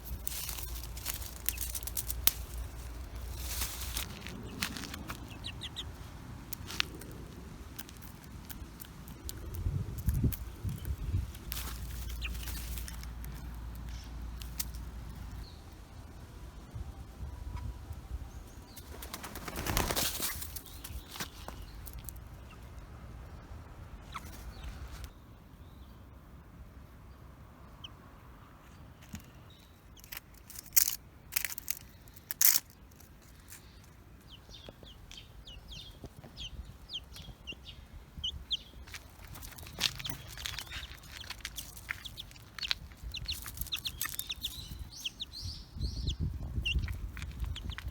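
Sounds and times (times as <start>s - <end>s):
chicks flapping wings: 0.2s - 13.4s, 18.8s - 22.1s, 24.0s - 24.9s, 34.6s - 47.9s
chicks peeping: 0.2s - 15.7s, 24.0s - 25.1s, 33.8s - 47.9s.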